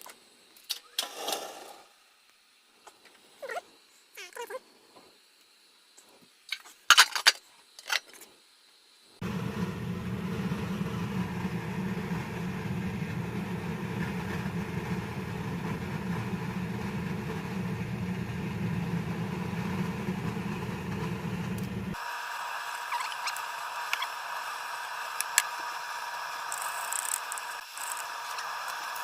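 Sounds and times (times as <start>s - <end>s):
steady low rumble: 9.2s - 22.0s.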